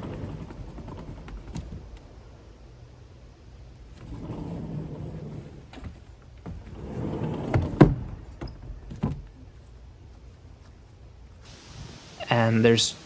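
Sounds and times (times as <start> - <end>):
sliding door rolling on track: 0.0 - 2.0, 3.8 - 8.7.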